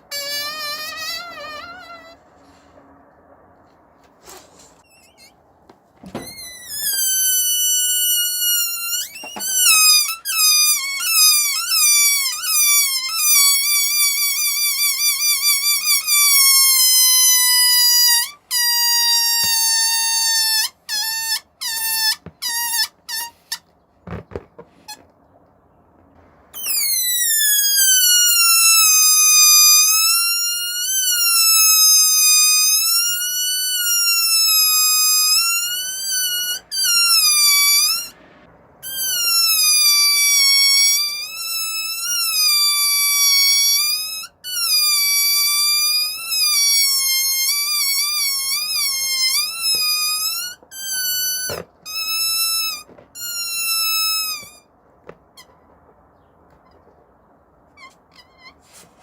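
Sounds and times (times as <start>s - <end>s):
air squealing out of balloon: 0.0s - 3.1s, 4.1s - 25.1s, 26.5s - 55.6s, 57.6s - 59.0s.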